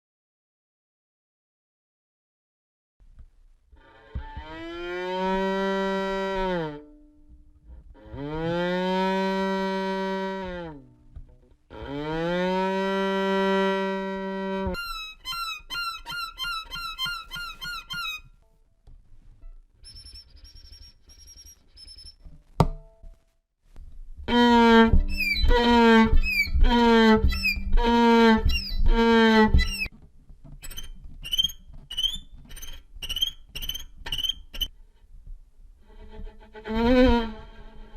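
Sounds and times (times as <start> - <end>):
violin bowed notes bending in pitch: 3.8 - 7.1, 8.0 - 10.9, 11.7 - 18.4, 24.3 - 29.9, 36.0 - 37.9
violin downward-sliding notes: 3.8 - 7.2, 8.0 - 10.9, 11.7 - 18.4, 24.3 - 29.9, 35.9 - 37.9
violin high chirping notes: 14.8 - 18.4, 24.3 - 29.9, 30.6 - 34.7.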